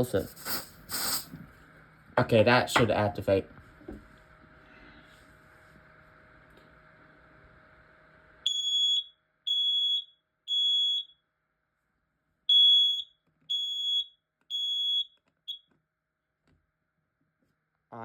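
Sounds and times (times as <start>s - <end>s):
smoke alarm beeping: 8.4s - 11.2s, 12.5s - 15.7s.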